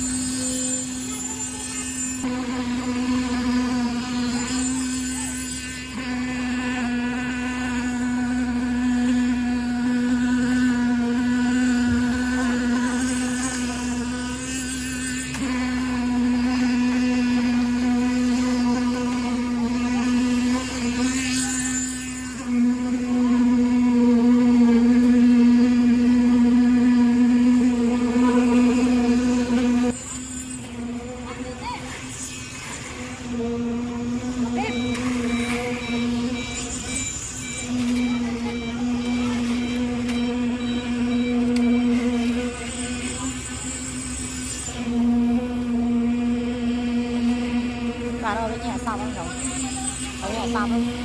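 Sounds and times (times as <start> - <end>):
motor humming steadily: 0.0 - 51.0.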